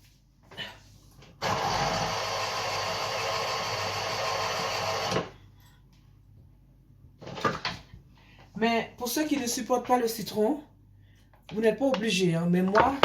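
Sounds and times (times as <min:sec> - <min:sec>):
kitchen appliance motor running: 0:01.4 - 0:05.4.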